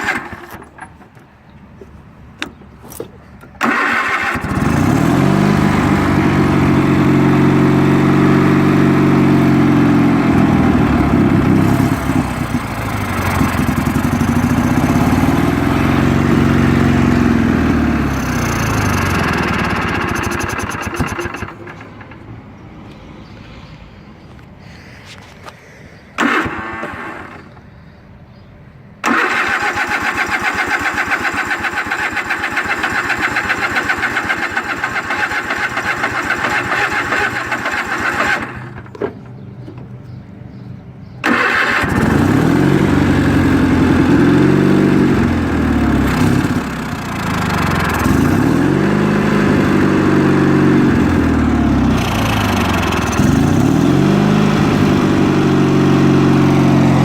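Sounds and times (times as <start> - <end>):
car engine cranking: 0.0 - 1.2, 2.4 - 22.6, 26.2 - 27.6, 29.0 - 39.5, 41.2 - 57.0
car engine revving: 3.6 - 21.9, 41.2 - 57.0.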